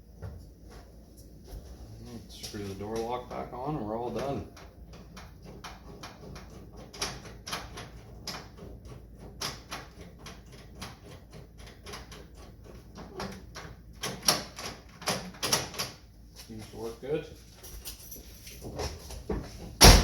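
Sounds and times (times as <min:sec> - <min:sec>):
louder knocks: 0:19.8 - 0:20.0.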